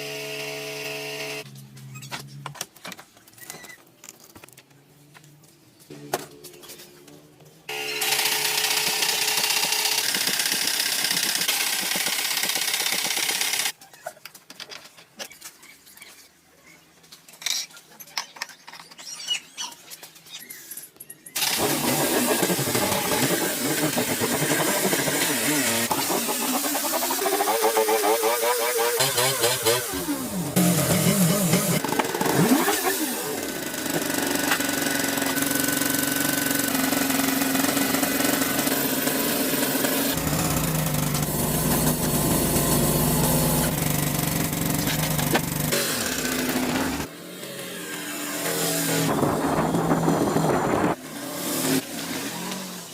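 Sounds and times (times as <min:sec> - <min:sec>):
car engine running: 0:40.1 - 0:47.0.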